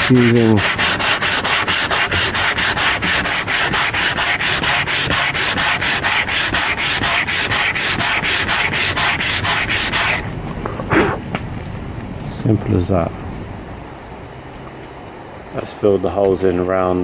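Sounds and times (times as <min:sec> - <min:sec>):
sandpaper rubbing on wood: 0:00.0 - 0:10.2.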